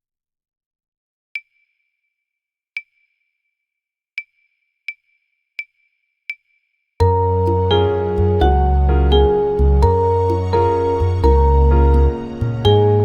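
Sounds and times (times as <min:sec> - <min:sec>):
gentle instrumental backing track: 0:07.0 - 0:13.0.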